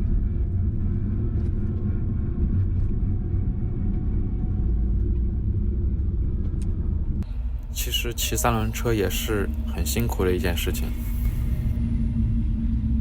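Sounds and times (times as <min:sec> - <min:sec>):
road noise: 0:07.2 - 0:11.8.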